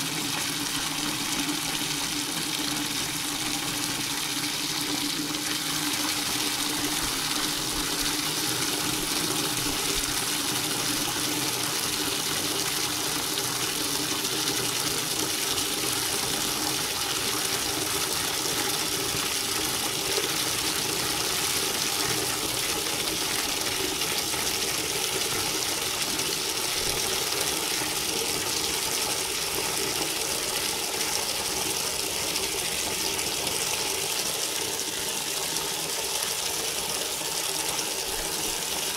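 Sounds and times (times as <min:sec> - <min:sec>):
tap water pouring into bucket: 0:00.0 - 0:38.9.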